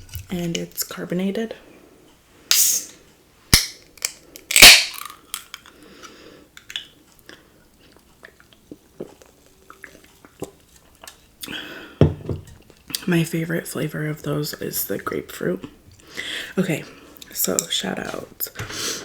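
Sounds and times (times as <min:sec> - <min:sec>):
can opening pop: 0:02.5 - 0:02.9, 0:03.5 - 0:05.1
gas hissing from drink: 0:02.5 - 0:02.9.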